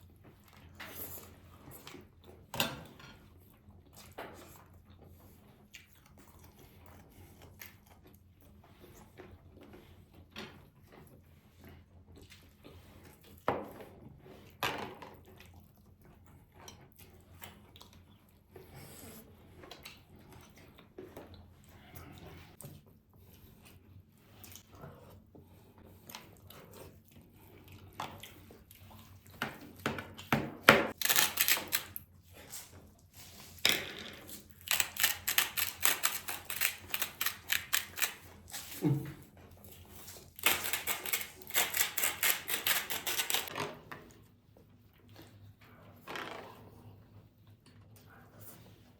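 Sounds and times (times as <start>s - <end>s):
person chewing food: 25.8s - 29.4s.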